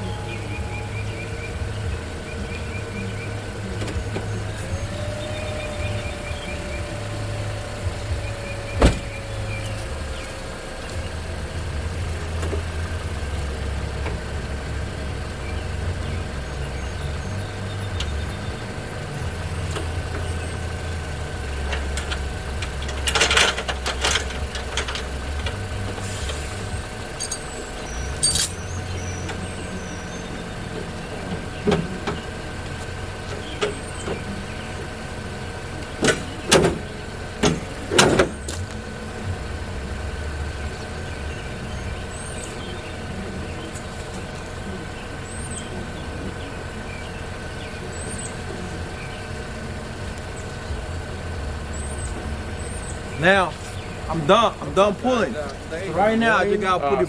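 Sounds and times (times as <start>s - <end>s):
car engine idling: 0.0s - 57.0s
sharp metallic clanks and knocks: 27.1s - 28.9s.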